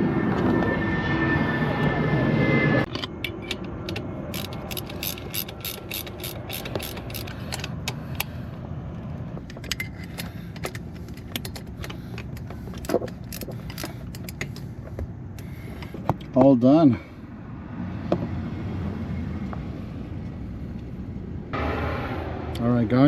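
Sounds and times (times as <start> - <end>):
ratchet wrench clicking: 4.3 - 8.3.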